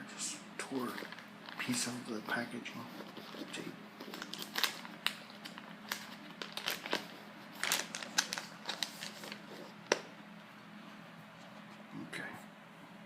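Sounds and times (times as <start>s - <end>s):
plastic wrap crinkling: 0.6s - 10.1s.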